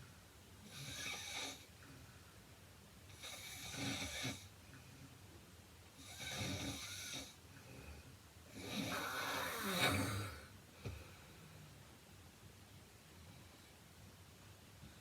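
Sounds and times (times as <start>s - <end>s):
woman snoring: 3.2s - 4.4s, 6.0s - 7.4s, 8.5s - 10.5s.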